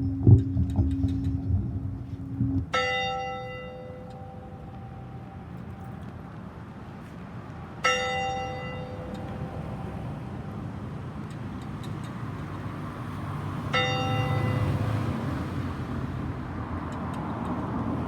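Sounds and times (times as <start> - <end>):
steady low rumble: 0.0 - 6.0
church bell tolling: 2.7 - 6.0, 7.8 - 10.6, 13.7 - 15.0.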